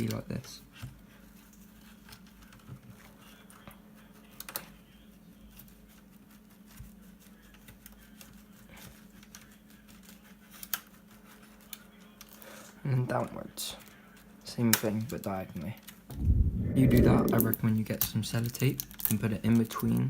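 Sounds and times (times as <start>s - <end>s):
low hum: 16.1s - 17.6s.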